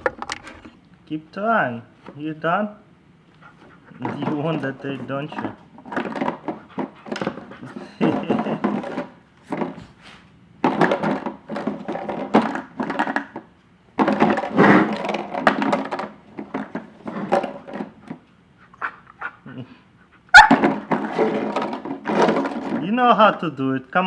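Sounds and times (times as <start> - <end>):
plastic bottles clattering on wood: 0.0 - 0.7, 4.0 - 4.7, 5.3 - 9.8, 10.6 - 18.2, 20.4 - 23.4.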